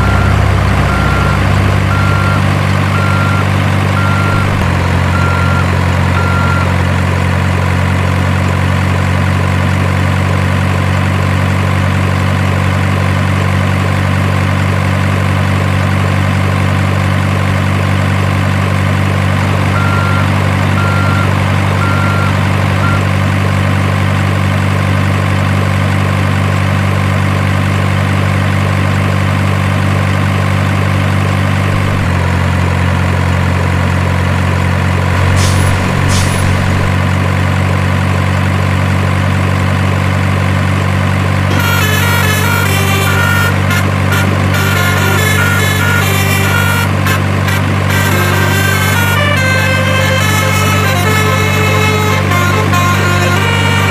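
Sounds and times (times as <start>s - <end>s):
simulated diesel engine hum: 0.0s - 53.9s
short high beeps: 3.0s - 5.6s, 35.2s - 37.0s.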